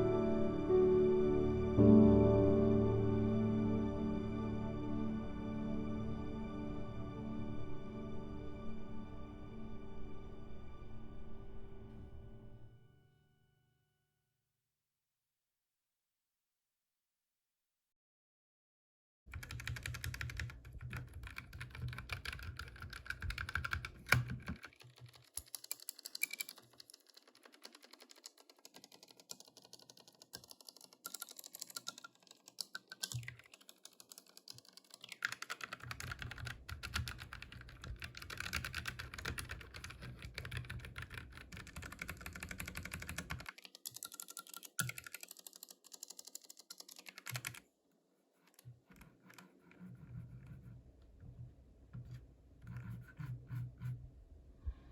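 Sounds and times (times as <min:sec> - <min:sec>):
typing on mechanical keyboard: 0:19.3 - 0:47.6.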